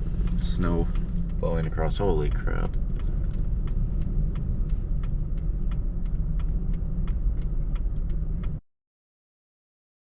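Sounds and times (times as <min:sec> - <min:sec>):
blizzard wind buffeting car: 0:00.0 - 0:08.6
snow ticking on car: 0:00.0 - 0:08.6.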